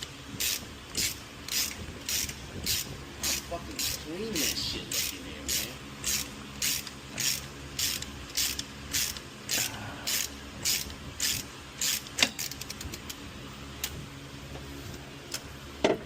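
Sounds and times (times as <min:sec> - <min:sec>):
ratchet wrench clicking: 0:00.0 - 0:13.2.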